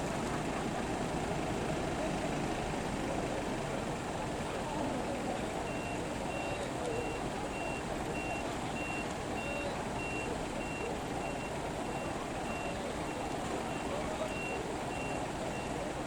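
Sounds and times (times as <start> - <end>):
low rumble of vehicles: 0.0 - 16.0
reversing alarm beeping: 5.7 - 15.9.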